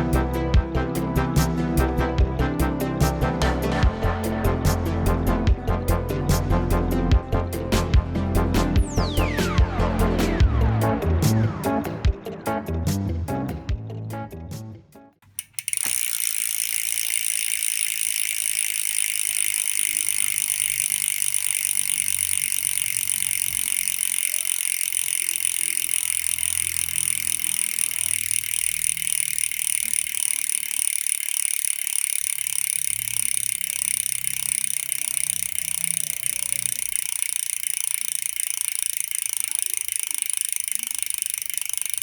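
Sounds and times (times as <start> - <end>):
bicycle hub freewheel clicking: 15.4 - 42.0.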